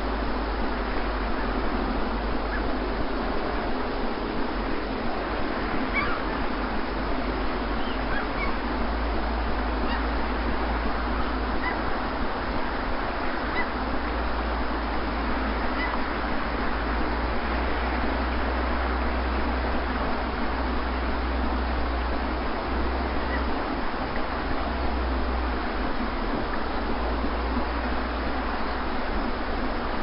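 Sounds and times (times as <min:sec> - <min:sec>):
sea surf rushing: 0:00.0 - 0:30.0
faint short bird calls: 0:05.9 - 0:06.3, 0:07.8 - 0:08.6, 0:09.8 - 0:10.2, 0:11.6 - 0:11.8, 0:15.7 - 0:16.0, 0:23.2 - 0:23.5.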